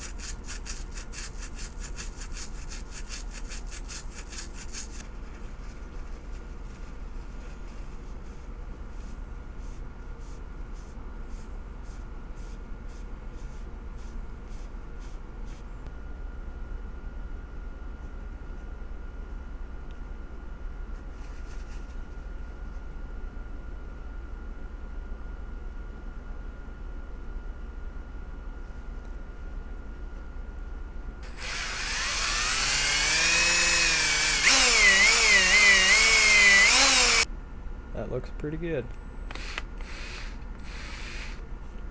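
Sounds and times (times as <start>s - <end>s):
steady low hum: 0.0s - 41.9s
small power tool motor: 31.2s - 37.3s, 39.3s - 41.4s.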